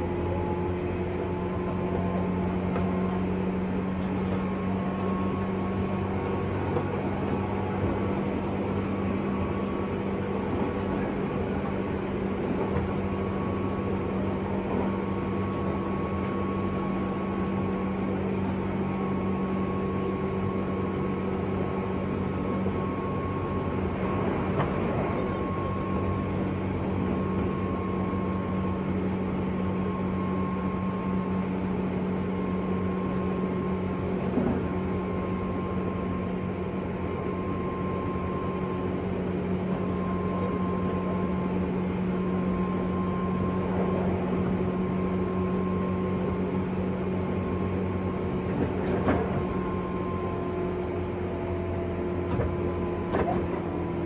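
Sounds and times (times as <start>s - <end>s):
electric train motors humming: 0.0s - 54.0s.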